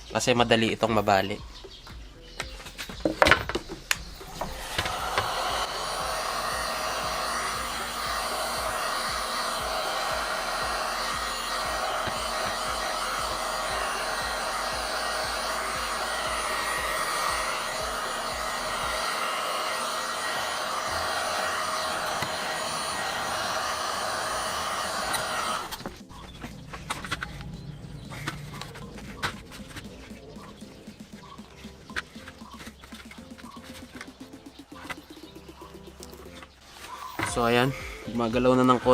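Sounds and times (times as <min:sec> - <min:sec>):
heat gun blowing: 0:04.3 - 0:27.4.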